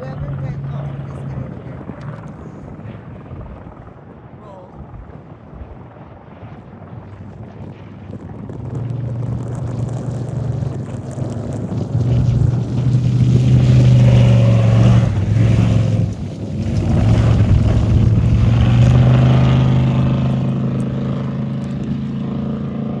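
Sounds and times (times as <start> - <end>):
race vehicle engine revving: 0.0 - 2.3, 8.6 - 23.0.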